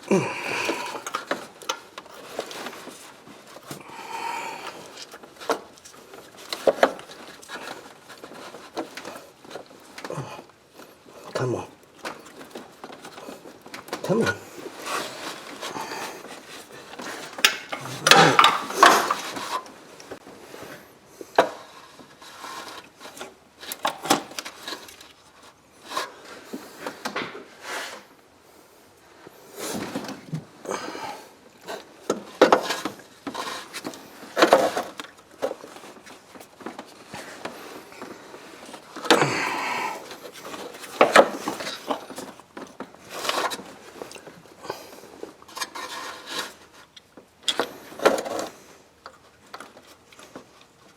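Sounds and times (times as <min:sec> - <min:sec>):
hand tools scraping and knocking: 0:00.0 - 0:28.1, 0:29.2 - 0:50.9.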